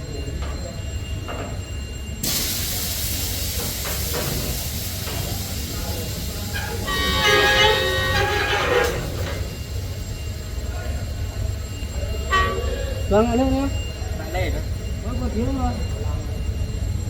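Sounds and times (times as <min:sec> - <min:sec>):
diesel locomotive engine rumble: 0:00.0 - 0:17.0
hiss: 0:02.2 - 0:07.6
train horn: 0:06.5 - 0:09.2, 0:12.3 - 0:12.8.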